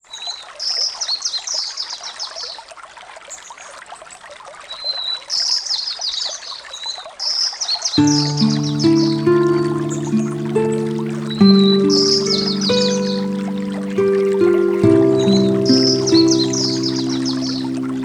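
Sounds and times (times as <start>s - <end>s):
trickle of running water: 0.0s - 18.0s
songbird singing: 7.9s - 18.0s
music with held tones: 8.0s - 18.0s.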